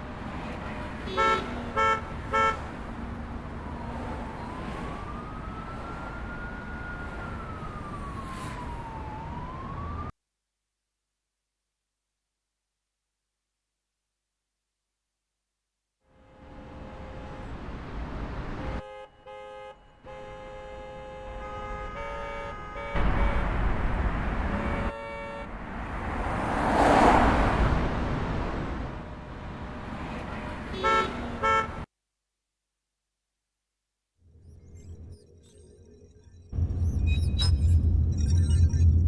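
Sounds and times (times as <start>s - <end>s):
horn-like beeps: 34.6s - 39.0s.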